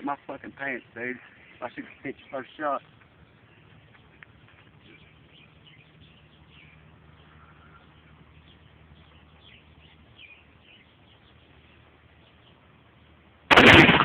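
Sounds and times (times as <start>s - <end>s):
faint bird chirps: 0.5s - 13.2s
rifle shot: 13.5s - 14.0s.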